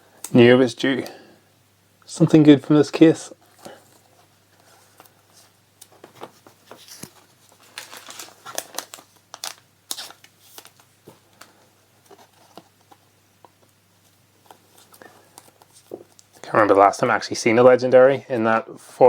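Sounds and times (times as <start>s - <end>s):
trading cards being handled: 3.6s - 16.4s
foil wrapper crinkling: 5.8s - 11.6s.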